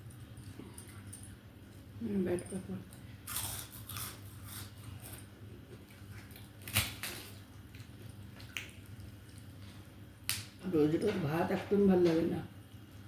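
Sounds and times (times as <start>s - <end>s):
crunching fried papad: 3.3s - 9.2s.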